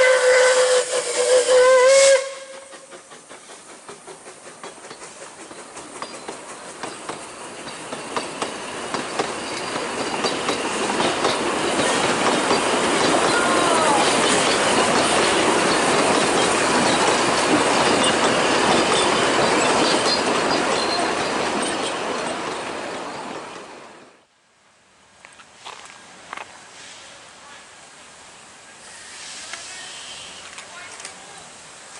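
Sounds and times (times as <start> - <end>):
train clattering on rails: 2.1 - 24.2
wheel squeal: 4.6 - 23.6.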